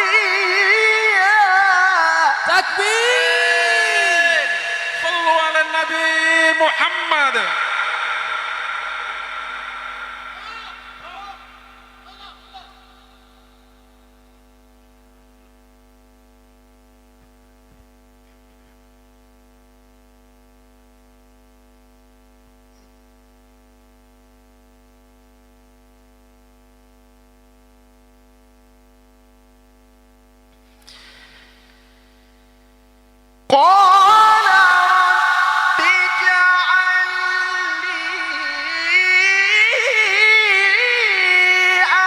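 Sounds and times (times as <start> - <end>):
electrical mains hum: 0.0 - 42.0
faint burst of noise: 3.9 - 14.2, 30.6 - 33.1.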